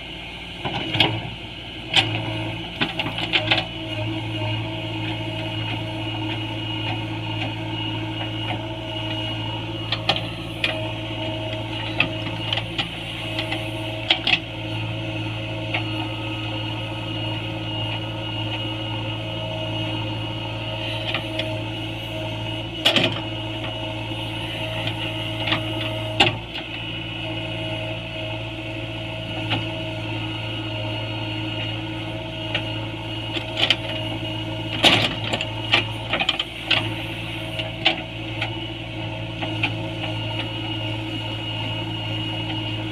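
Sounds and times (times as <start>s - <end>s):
diesel engine running: 0.0s - 42.9s
digger knocks and clanks: 9.8s - 15.0s, 22.8s - 23.8s, 34.7s - 36.9s.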